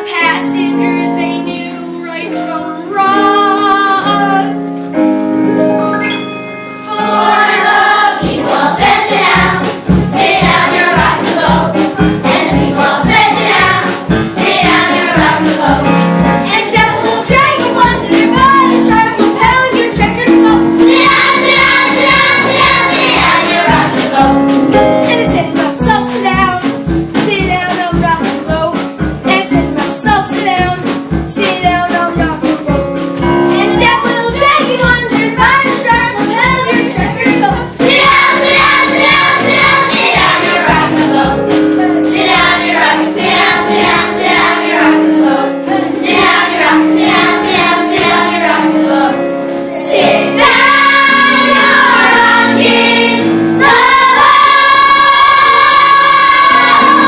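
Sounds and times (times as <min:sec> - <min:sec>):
instrumental accompaniment: 0:00.0 - 0:57.0
children singing: 0:06.8 - 0:24.6, 0:33.6 - 0:57.0
steady beat: 0:07.0 - 0:49.0, 0:49.9 - 0:57.0.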